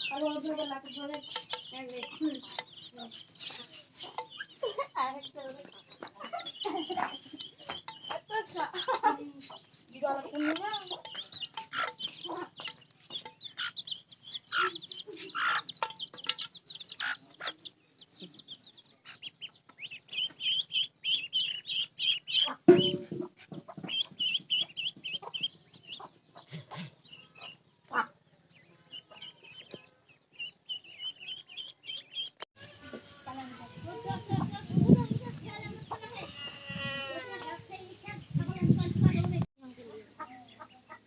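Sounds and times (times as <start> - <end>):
chicks and ducklings peeping: 0.0 - 41.0
loud thump: 22.7 - 23.3.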